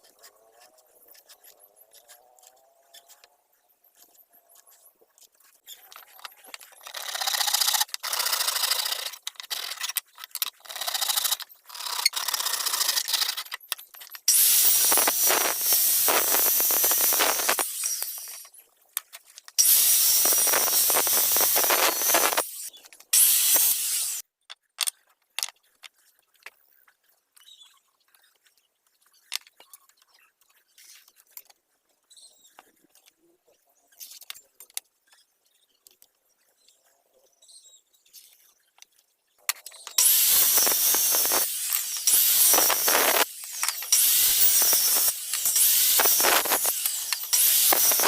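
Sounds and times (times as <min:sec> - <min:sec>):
tool scraping wood: 0:00.0 - 0:18.5, 0:19.1 - 0:24.2, 0:39.5 - 0:48.0.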